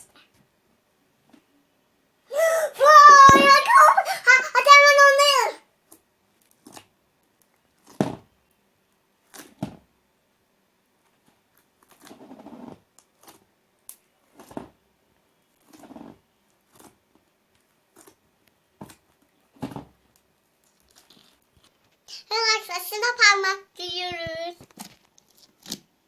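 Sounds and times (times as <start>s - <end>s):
slime squishing by hand: 5.8s - 8.4s, 9.2s - 9.9s, 10.9s - 22.1s, 24.6s - 26.0s.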